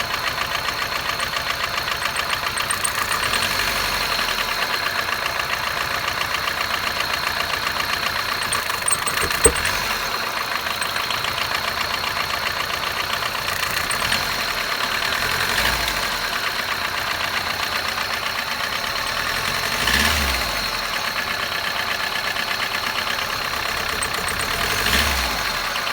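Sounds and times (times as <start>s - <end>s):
car engine idling: 0.0s - 4.4s
rapid engine ticking: 0.0s - 5.3s, 6.1s - 15.6s, 23.0s - 25.6s
sharp click: 2.0s - 3.5s, 8.4s - 9.8s, 23.9s - 24.6s.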